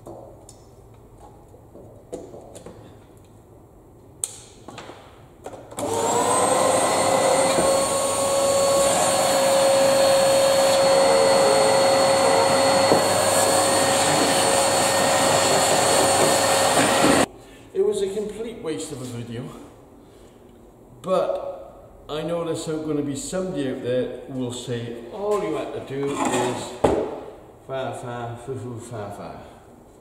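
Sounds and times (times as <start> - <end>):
vacuum cleaner motor whirring: 5.8 - 17.3.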